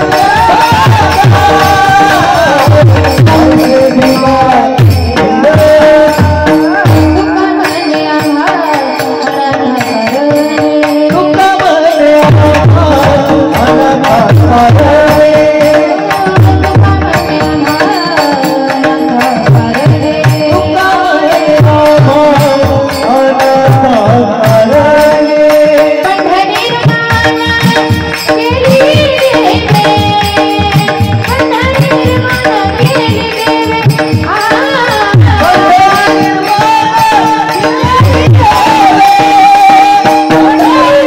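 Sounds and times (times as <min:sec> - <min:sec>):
women singing devotional song: 0:00.0 - 0:41.0.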